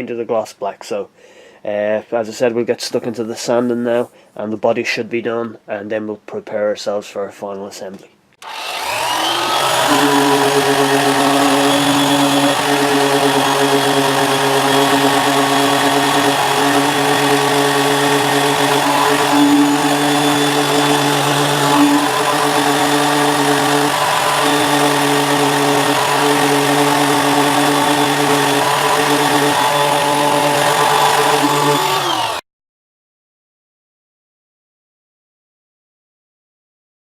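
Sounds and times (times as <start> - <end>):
small electric motor running: 8.4 - 32.4.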